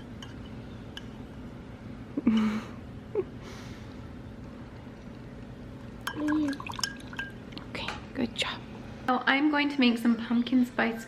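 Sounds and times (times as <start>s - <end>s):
steady low hum: 0.0s - 11.0s
soft breath: 3.4s - 4.1s.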